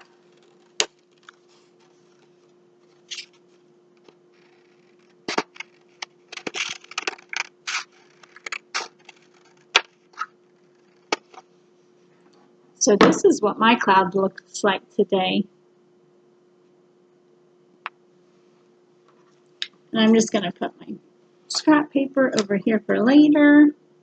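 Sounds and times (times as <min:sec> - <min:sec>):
scissors snipping paper: 0:05.3 - 0:10.3.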